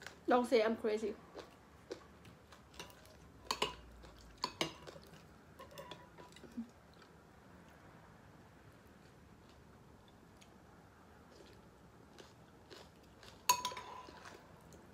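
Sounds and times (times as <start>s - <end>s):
sharp crunches of eating: 11.3s - 14.5s.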